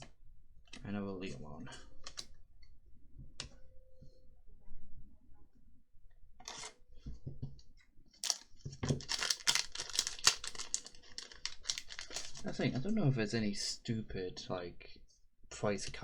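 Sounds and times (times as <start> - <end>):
cards rustling: 8.2 - 12.6
foil wrapper crinkling: 8.2 - 12.6.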